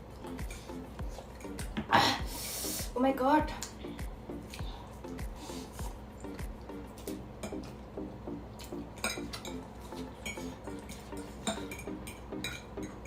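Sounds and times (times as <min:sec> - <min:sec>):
quiet background music: 0:00.0 - 0:13.0
cutlery clinking against a plate: 0:07.4 - 0:07.7, 0:09.0 - 0:13.0.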